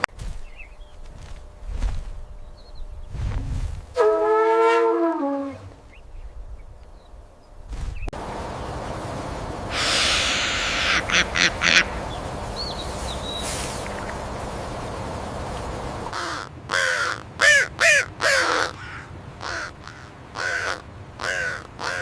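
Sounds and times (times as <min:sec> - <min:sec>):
harsh bird calls: 0:08.0 - 0:22.0
short rush of noise: 0:08.2 - 0:16.1.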